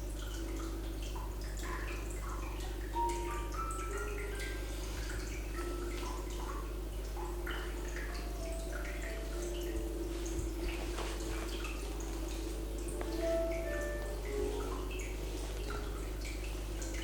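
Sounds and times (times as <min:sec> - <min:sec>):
soft relaxing music: 0:00.0 - 0:17.0
steady low hum: 0:00.0 - 0:17.0.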